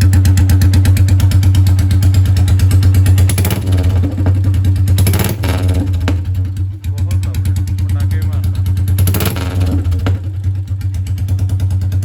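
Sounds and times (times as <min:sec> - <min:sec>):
loud open exhaust engine thumping: 0:00.0 - 0:12.0.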